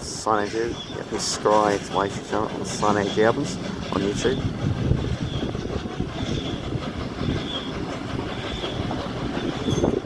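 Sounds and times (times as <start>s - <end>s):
train carriage rolling on rails: 0.0s - 10.0s.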